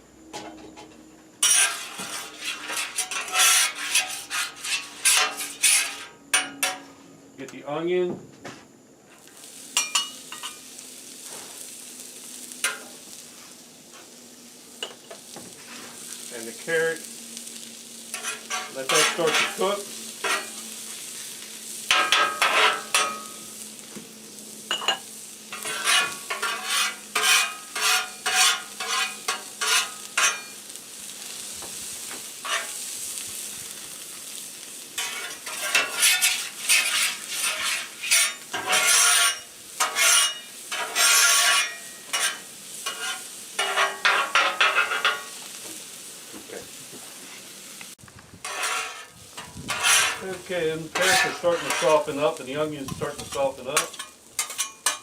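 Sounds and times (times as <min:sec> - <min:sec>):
vegetables sizzling in oil: 0:01.4 - 0:06.9, 0:09.1 - 0:55.0
metal spatulas scraping griddle: 0:01.4 - 0:07.0, 0:18.1 - 0:23.4, 0:25.5 - 0:30.6, 0:32.4 - 0:32.8, 0:35.0 - 0:45.4, 0:48.4 - 0:55.0.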